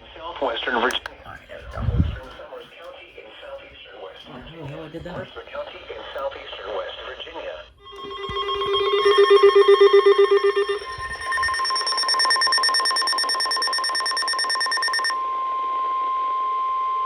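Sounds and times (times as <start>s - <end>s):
rapidly pulsing high tones: 7.8s - 15.2s
steady alert tone: 7.8s - 15.2s
pulsing low buzzing tone: 7.9s - 15.0s.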